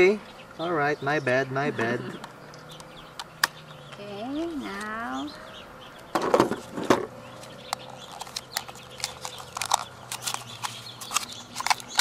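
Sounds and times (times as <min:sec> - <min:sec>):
plastic packaging clicks and rattles: 0:07.7 - 0:12.0.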